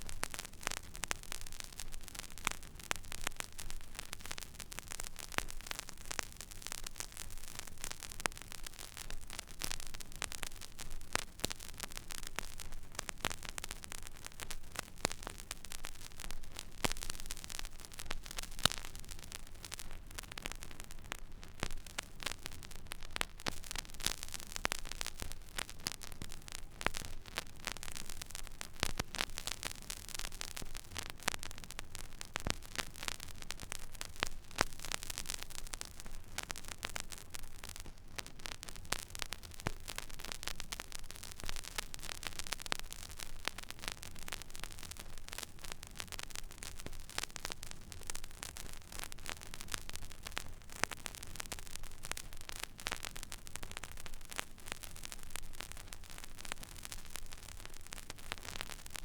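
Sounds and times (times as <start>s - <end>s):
vinyl surface hiss and crackle: 0.0s - 59.0s.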